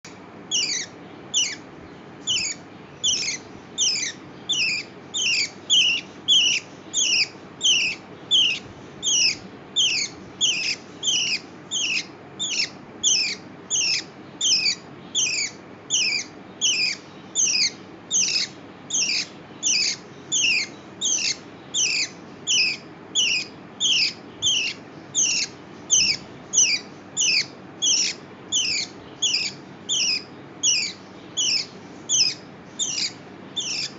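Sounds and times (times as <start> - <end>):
lovebird high-pitched chirps: 0.5 - 33.9.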